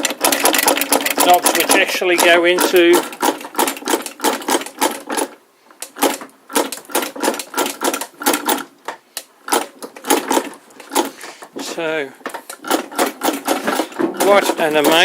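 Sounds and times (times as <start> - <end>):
sewing machine clacking: 0.0 - 15.0.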